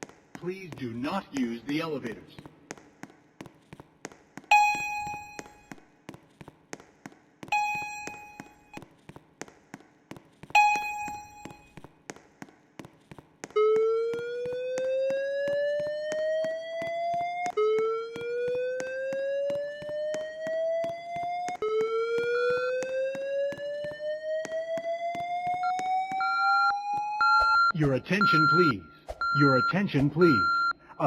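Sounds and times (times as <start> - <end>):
electronic alert tone: 4.5 - 5.7, 7.5 - 8.8, 10.6 - 11.8.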